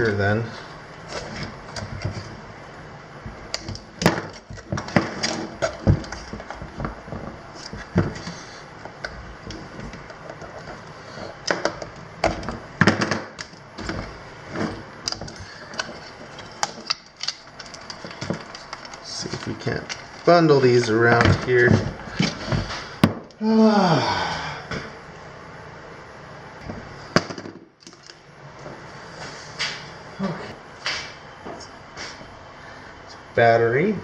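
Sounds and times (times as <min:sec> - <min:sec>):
wires and connectors rustling: 0:00.0 - 0:23.4.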